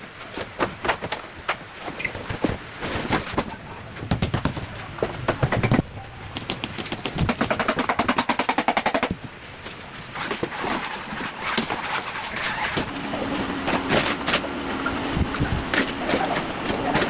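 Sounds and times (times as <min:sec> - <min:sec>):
fast rapid metal strikes: 0:04.0 - 0:09.2.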